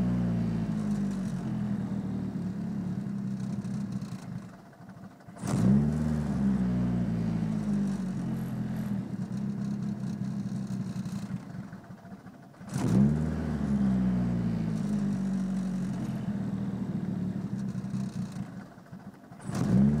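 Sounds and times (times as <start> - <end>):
car engine revving: 5.4 - 11.3, 12.7 - 18.5, 19.4 - 20.0.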